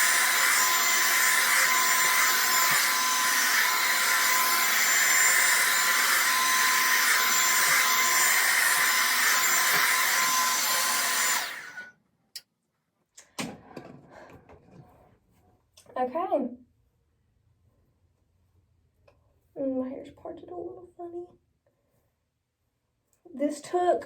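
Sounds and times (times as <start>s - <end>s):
hair dryer brush blowing: 0.0s - 11.9s.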